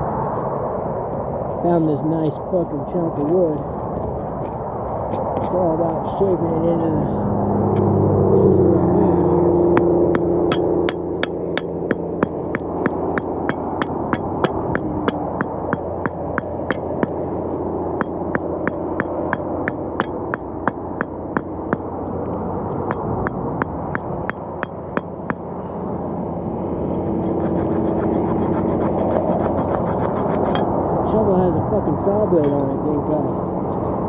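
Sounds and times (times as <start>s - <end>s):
steady low rumble: 0.0s - 34.0s
metal tool knocking on wood: 9.8s - 17.2s, 18.0s - 21.9s, 22.9s - 25.4s.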